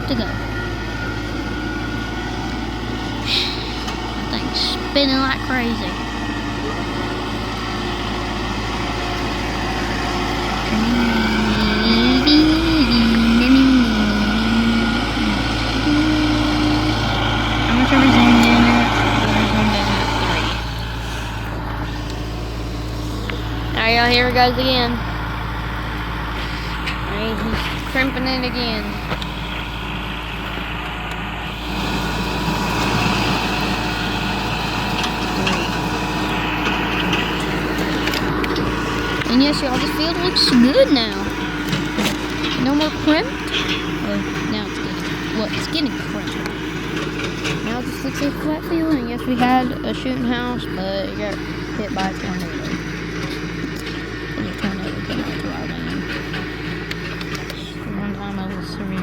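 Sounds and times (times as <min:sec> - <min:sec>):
tractor engine running: 0:00.0 - 0:59.0
person humming: 0:10.7 - 0:20.6.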